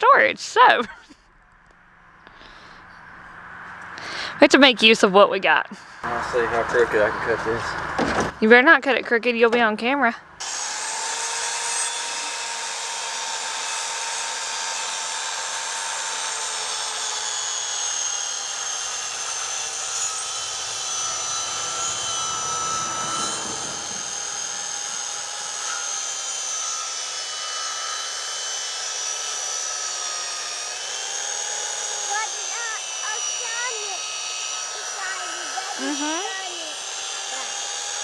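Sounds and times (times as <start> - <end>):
circular saw whining: 5.8 - 8.4, 10.4 - 38.0
saw blade rasping in wood: 10.4 - 38.0.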